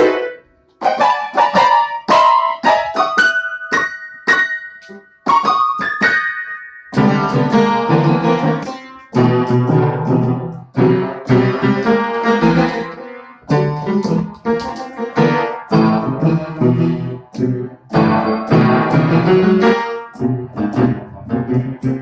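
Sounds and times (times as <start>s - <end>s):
keyboard chords: 0.0s - 22.0s.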